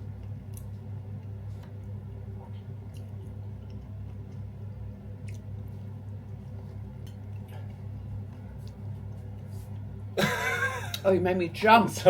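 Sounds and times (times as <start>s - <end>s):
low electrical hum: 0.0s - 12.0s
person chewing: 2.4s - 4.6s, 5.2s - 7.9s.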